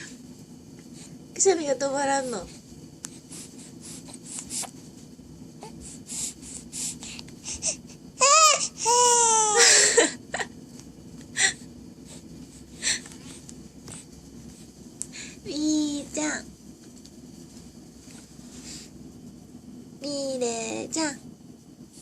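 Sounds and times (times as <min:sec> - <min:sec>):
baby snuffling: 0:03.1 - 0:04.8
baby crying: 0:08.2 - 0:10.1.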